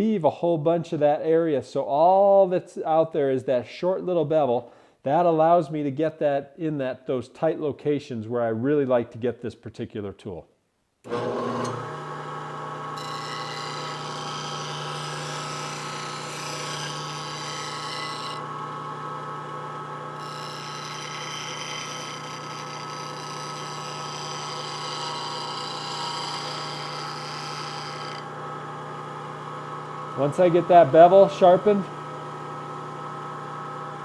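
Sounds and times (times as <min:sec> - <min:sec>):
bench grinder motor hum: 0:11.1 - 0:34.0
tool grinding against wheel: 0:13.0 - 0:18.6, 0:20.2 - 0:28.3.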